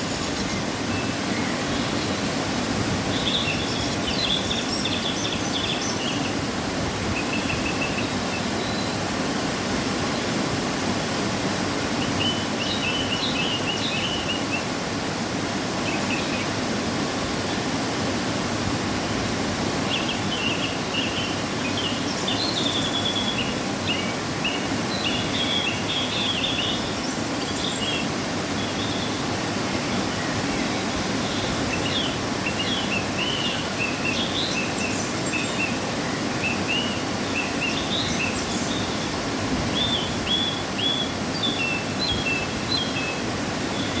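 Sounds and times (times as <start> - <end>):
waterfall rushing: 0.0 - 44.0.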